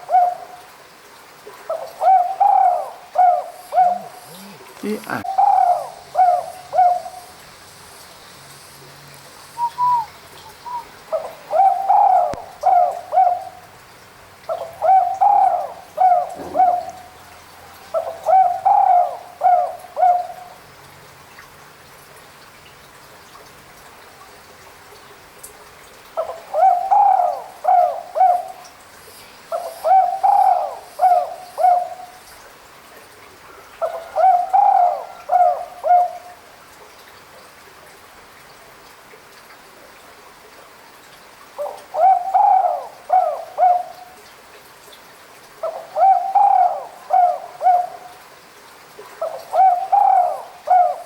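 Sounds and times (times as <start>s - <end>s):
dove cooing: 1.7s - 7.3s, 9.6s - 13.6s, 14.5s - 20.6s, 26.2s - 28.6s, 29.5s - 32.2s, 33.8s - 36.3s, 41.6s - 44.2s, 45.6s - 48.2s, 49.2s - 51.0s.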